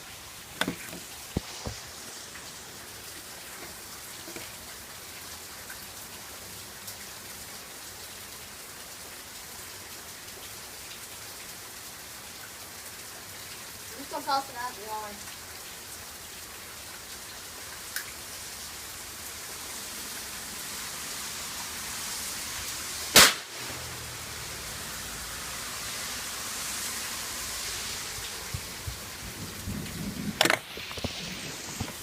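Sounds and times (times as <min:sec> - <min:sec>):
heavy rain: 0:00.0 - 0:32.0
firecracker bang: 0:23.1 - 0:23.8.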